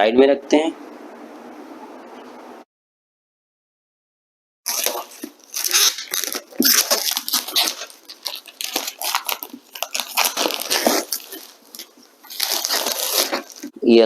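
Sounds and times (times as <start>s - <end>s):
packaging crinkling and tearing: 4.7s - 13.8s.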